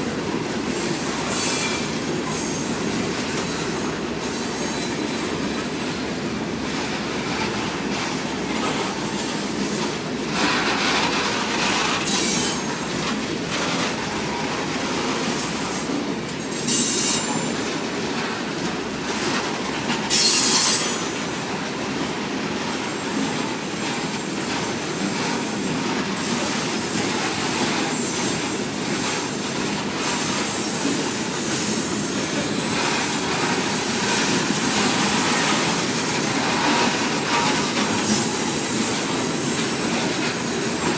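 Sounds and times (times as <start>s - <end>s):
train wheels rumbling on rail: 0.0s - 40.9s
high-pitched wheel squeal: 20.1s - 21.0s.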